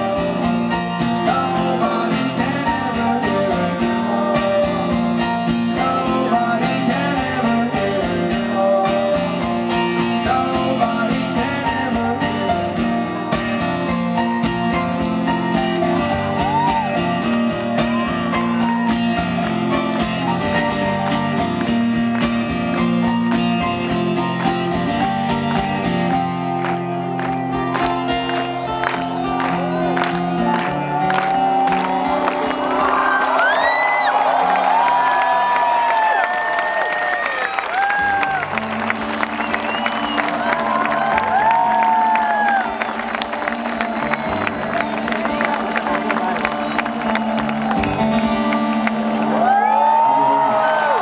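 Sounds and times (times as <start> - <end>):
person singing: 0.0 - 13.6, 26.8 - 33.0
live rock band playing: 0.0 - 34.4, 37.8 - 51.0
strummed guitars: 0.0 - 35.9, 37.8 - 51.0.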